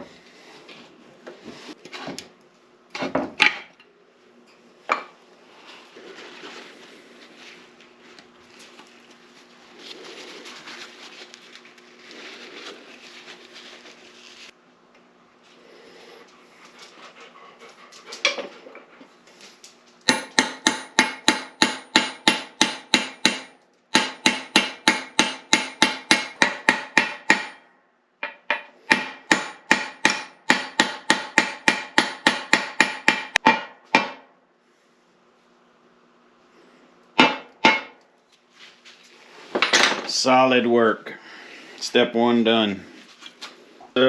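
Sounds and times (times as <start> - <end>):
hammer striking metal: 20.1 - 27.6, 28.2 - 34.3, 37.2 - 38.0.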